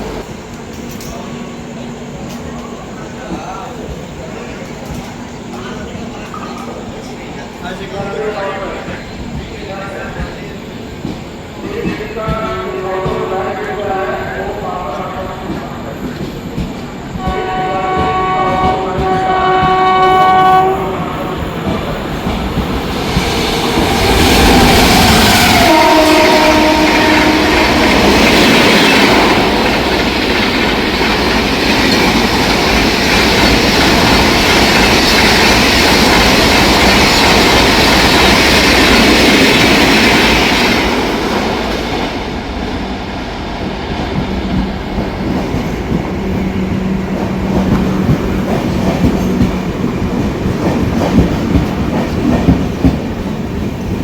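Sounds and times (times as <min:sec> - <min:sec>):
train passing with wheel noise: 0:00.0 - 0:54.0
locomotive horn blasts: 0:17.2 - 0:21.0, 0:25.5 - 0:28.1.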